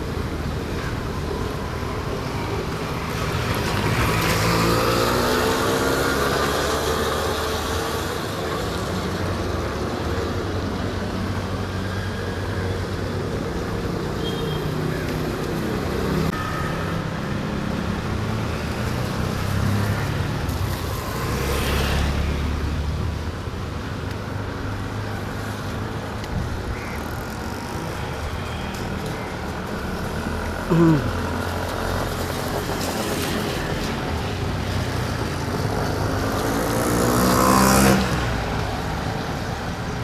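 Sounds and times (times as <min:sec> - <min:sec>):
vehicle engines running: 0:17.4 - 0:40.0.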